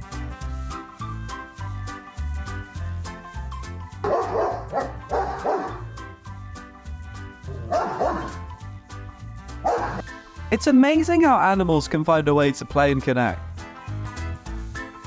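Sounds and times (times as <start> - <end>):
background music with a beat: 0.0 - 15.0
dog barking: 4.0 - 6.0, 7.6 - 8.4, 9.6 - 10.0.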